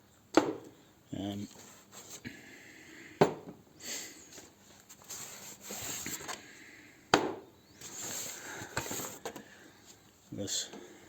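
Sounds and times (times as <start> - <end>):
rustling handling noise: 1.4 - 2.2, 4.3 - 6.4, 7.8 - 10.2.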